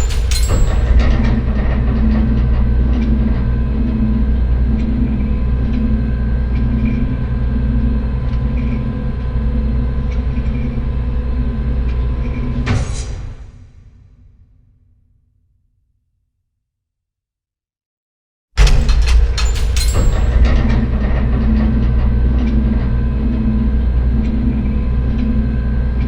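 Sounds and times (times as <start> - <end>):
metal door clanking shut: 0.0 - 3.6, 18.6 - 23.0
vault door mechanical rumble: 0.0 - 13.8, 18.6 - 26.0.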